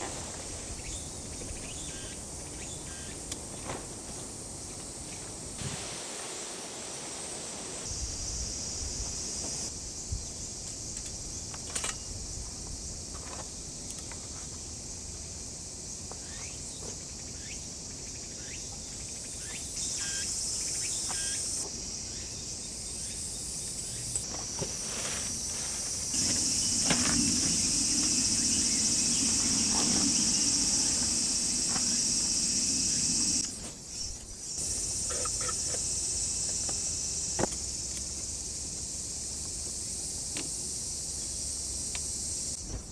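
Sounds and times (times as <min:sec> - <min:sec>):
insects chirring: 0:00.0 - 0:05.8, 0:07.1 - 0:42.9
low hum: 0:26.2 - 0:33.5.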